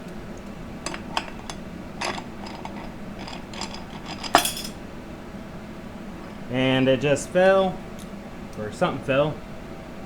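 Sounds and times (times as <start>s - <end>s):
metal parts clinking: 0.8s - 4.8s
metal part clanging: 0.9s - 4.8s.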